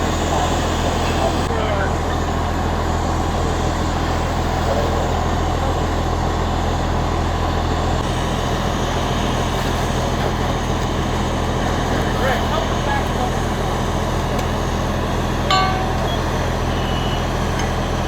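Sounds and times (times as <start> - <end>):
fire truck diesel engines droning: 0.0 - 18.0.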